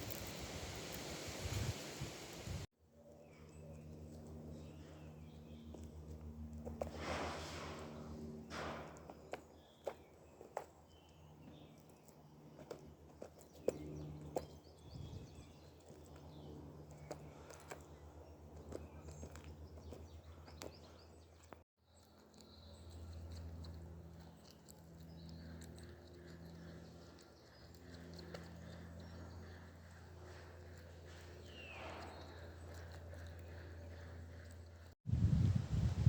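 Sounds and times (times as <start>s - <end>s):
bird tearing and eating meat: 15.4s - 34.9s.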